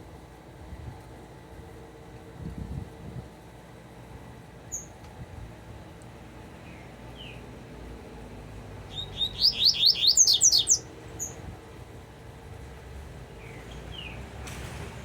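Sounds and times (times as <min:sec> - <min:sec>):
bird chirps: 0:08.9 - 0:11.4
bird singing sweeping notes: 0:08.9 - 0:11.4.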